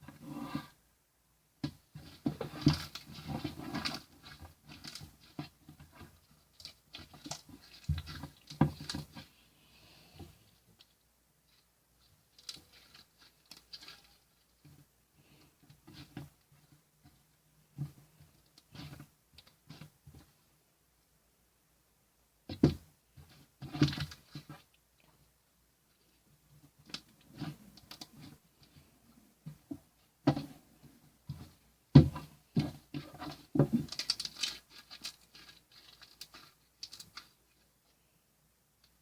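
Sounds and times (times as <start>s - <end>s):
rustling: 1.6s - 20.5s, 25.9s - 38.2s.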